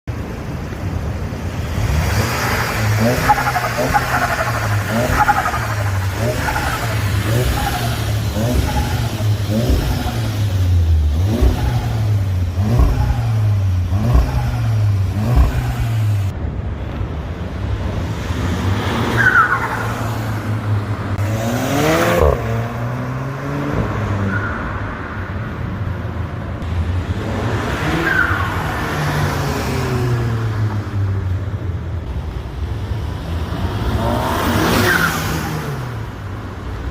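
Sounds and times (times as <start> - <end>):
car engine revving: 1.7 - 16.3, 18.7 - 24.2.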